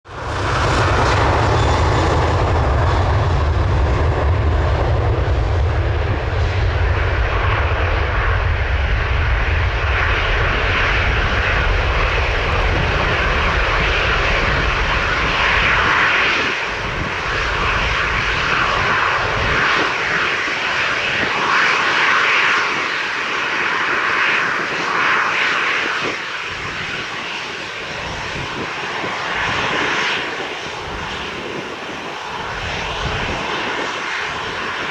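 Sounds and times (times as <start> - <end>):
jet engines roaring at takeoff: 0.0 - 34.9.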